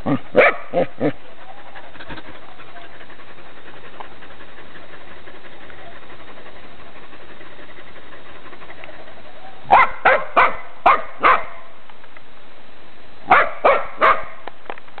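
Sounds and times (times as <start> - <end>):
steady background noise: 0.0 - 15.0
dog barking sharply: 0.4 - 0.6, 9.7 - 11.6, 13.3 - 14.4.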